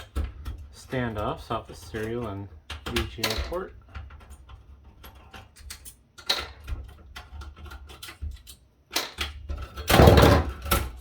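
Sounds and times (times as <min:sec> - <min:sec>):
small metal clicks and taps: 0:02.0 - 0:09.7.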